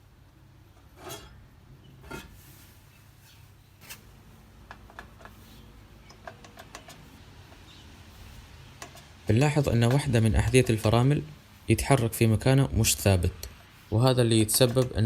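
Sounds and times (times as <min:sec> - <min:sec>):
metallic clicks and taps: 0:06.0 - 0:07.6.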